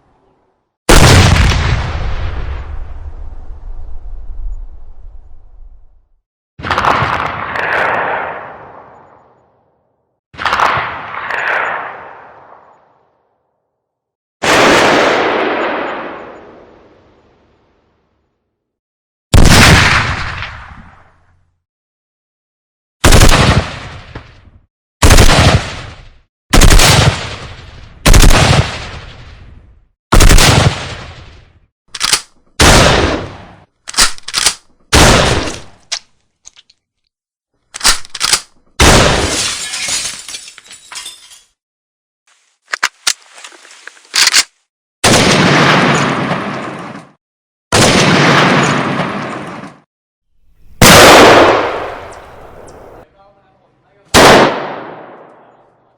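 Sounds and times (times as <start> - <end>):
bursts of gunfire echoing: 0.9 - 2.0, 6.6 - 9.0, 10.4 - 12.7, 14.4 - 16.7, 23.0 - 24.2, 25.0 - 29.2, 30.1 - 31.3, 32.6 - 33.7, 34.9 - 35.8, 45.0 - 47.0, 47.7 - 49.8, 50.6 - 53.1, 54.2 - 55.9
heavy gunshots: 0.9 - 2.7, 14.4 - 16.2, 19.3 - 20.8, 23.0 - 24.2, 25.0 - 29.4, 30.1 - 31.4, 32.6 - 33.6, 34.9 - 35.8, 38.8 - 39.4, 45.0 - 47.0, 47.7 - 49.8, 50.6 - 53.0, 54.2 - 55.5
sharp clicks: 31.9 - 32.4, 33.9 - 34.7, 37.7 - 38.6.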